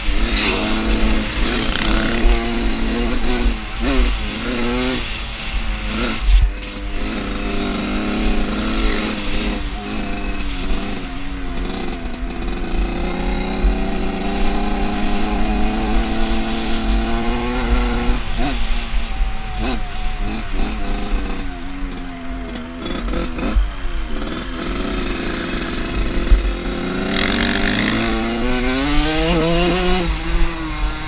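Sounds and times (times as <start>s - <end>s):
off-road vehicle engine revving: 0.0s - 5.1s, 22.8s - 31.0s.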